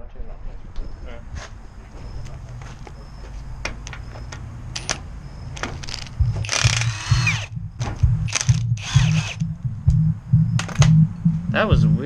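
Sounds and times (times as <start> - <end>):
low pulsing: 5.2 - 12.0
ratchet wrench clicking: 5.6 - 7.5, 8.3 - 9.5.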